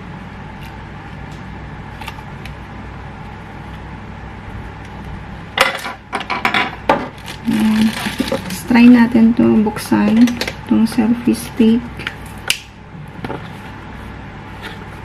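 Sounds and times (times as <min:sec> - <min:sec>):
steady low hum: 0:00.0 - 0:15.0
plastic parts clicking and rattling: 0:07.2 - 0:08.6.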